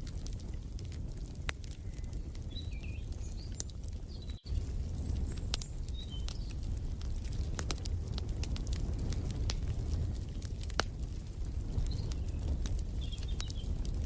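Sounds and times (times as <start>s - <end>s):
fireplace crackling and popping: 0.0s - 14.0s
birds chirping: 1.6s - 6.6s, 11.7s - 13.9s.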